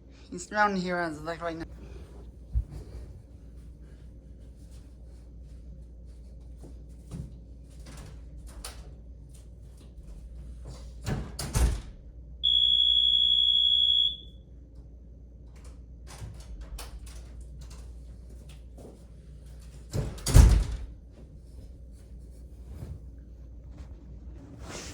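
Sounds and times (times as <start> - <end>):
electronic doorbell tone: 12.4 - 14.3.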